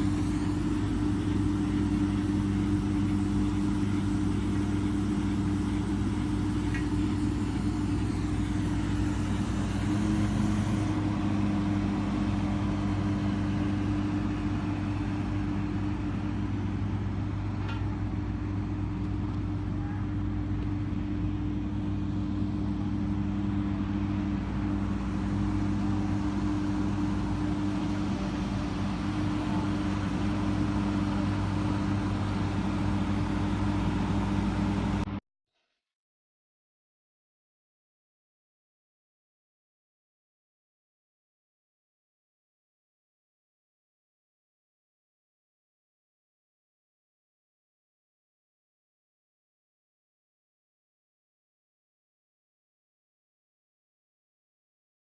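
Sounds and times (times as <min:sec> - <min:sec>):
machine motor humming: 0:00.0 - 0:15.0.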